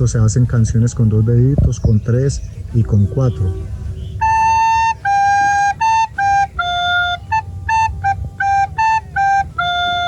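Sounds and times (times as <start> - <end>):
recorder playing simple tune: 3.0 - 10.0.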